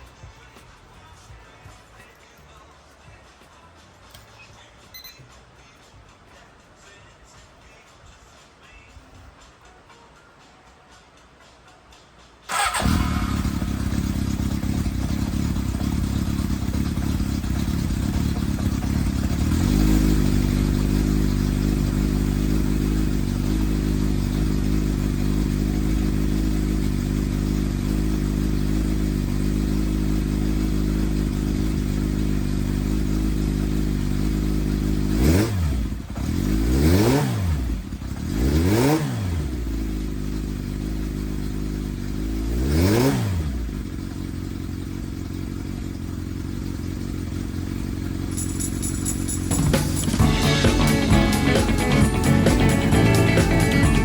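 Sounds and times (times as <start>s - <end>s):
engine revving: 12.5s - 54.0s
motorcycle engine idling: 12.5s - 54.0s.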